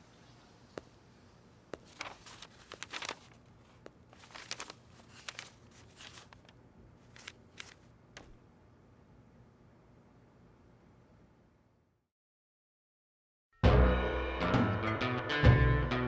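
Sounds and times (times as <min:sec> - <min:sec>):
crinkling and rustling handling: 0:01.7 - 0:08.4.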